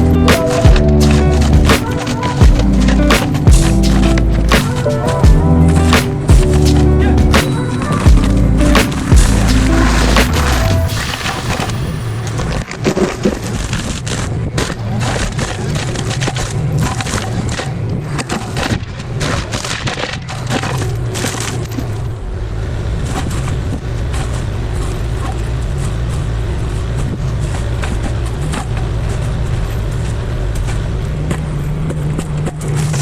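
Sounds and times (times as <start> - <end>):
diesel engine running: 8.1 - 12.2.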